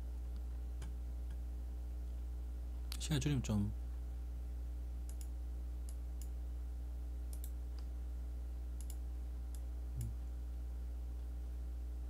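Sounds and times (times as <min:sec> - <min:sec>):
steady low hum: 0:00.0 - 0:12.0
computer mouse clicks: 0:05.0 - 0:06.4, 0:07.3 - 0:07.9, 0:08.8 - 0:10.1.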